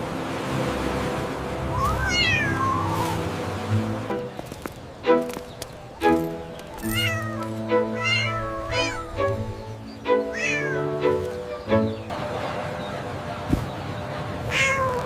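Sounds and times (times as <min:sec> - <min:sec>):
cat meowing: 0:01.8 - 0:03.1, 0:06.9 - 0:09.1, 0:10.3 - 0:10.9, 0:14.5 - 0:15.0
music with held notes: 0:03.2 - 0:12.1.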